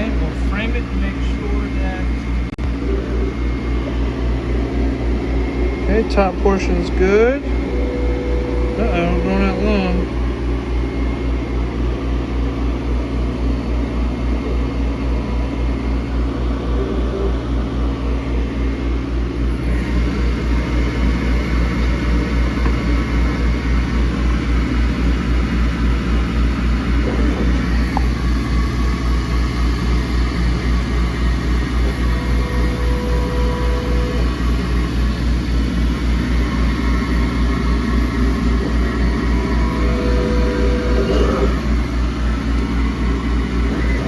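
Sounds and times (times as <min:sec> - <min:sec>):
laser cutter droning: 0:00.0 - 0:44.0
faint high whine: 0:02.8 - 0:10.2, 0:27.1 - 0:44.0.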